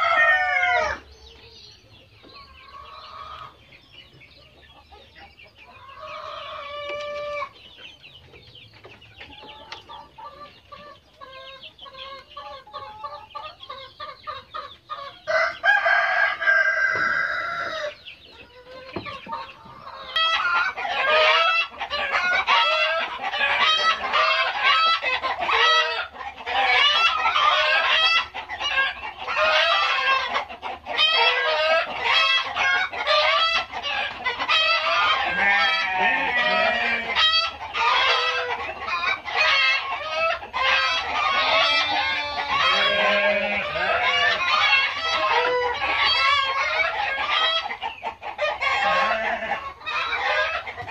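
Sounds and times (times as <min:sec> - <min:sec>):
rooster crowing: 0:00.0 - 0:01.0, 0:15.3 - 0:18.0, 0:34.7 - 0:38.5, 0:40.7 - 0:46.9, 0:48.6 - 0:50.4
chickens clucking: 0:00.0 - 0:50.9.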